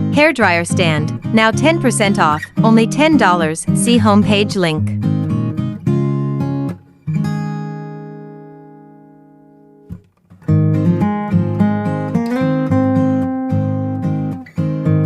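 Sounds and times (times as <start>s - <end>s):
strummed guitar: 0.0s - 15.0s.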